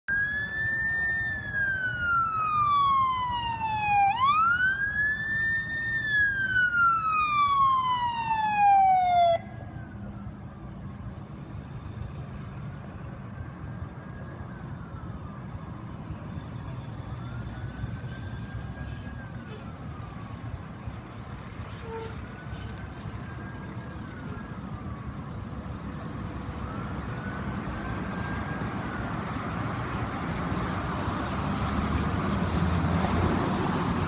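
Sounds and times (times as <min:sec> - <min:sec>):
engine and road rumble: 0:00.1 - 0:34.0
faint siren wail: 0:00.1 - 0:34.0
fire engine siren wailing: 0:00.1 - 0:34.0.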